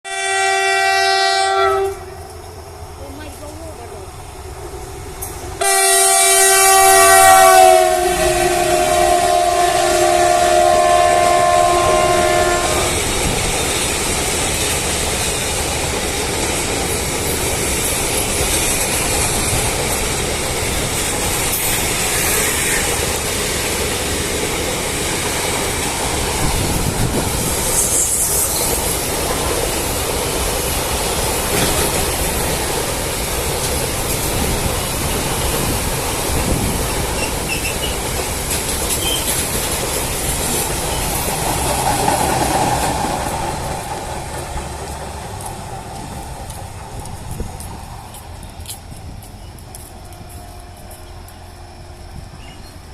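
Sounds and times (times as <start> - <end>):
locomotive horn chord: 0.1 - 2.2, 5.6 - 13.0
train wagons rumbling on rails: 0.1 - 52.9
high wheel squeals: 37.1 - 38.0, 38.9 - 39.5.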